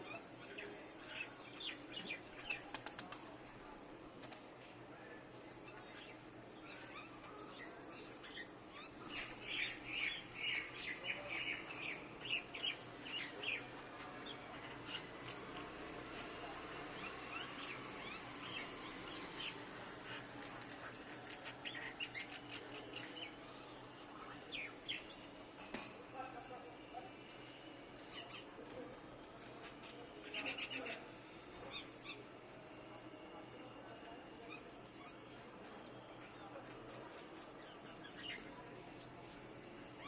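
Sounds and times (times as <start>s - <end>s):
small birds chirping and squawking: 36.8s - 38.6s.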